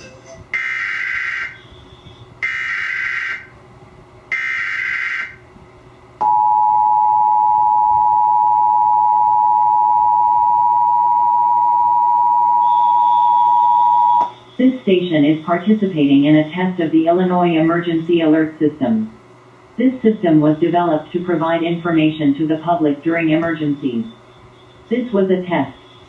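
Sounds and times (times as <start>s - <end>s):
two-tone attention signal: 6.2s - 14.3s
screeching data tones: 23.4s - 26.0s.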